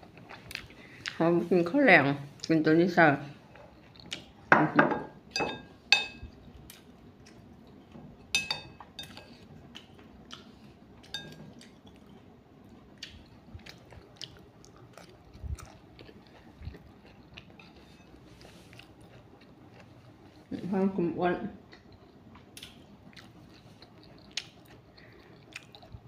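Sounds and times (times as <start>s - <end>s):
person chewing food: 0.0s - 1.2s, 3.4s - 4.5s, 6.4s - 20.5s, 21.6s - 26.0s
spoon clinking against plate: 4.6s - 6.2s, 8.3s - 9.3s, 11.1s - 11.4s.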